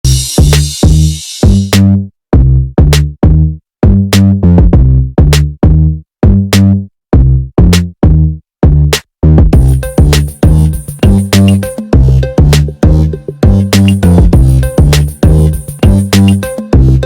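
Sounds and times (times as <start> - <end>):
electronic ringtone music: 9.6 - 17.0.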